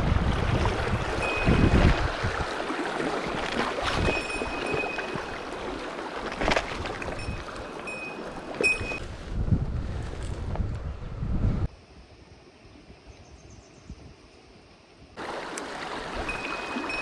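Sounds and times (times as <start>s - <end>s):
stream water rushing: 0.0s - 9.0s, 15.2s - 17.0s
wind buffeting microphone: 0.0s - 11.7s
thin high steady tone: 1.2s - 1.9s, 7.2s - 9.0s.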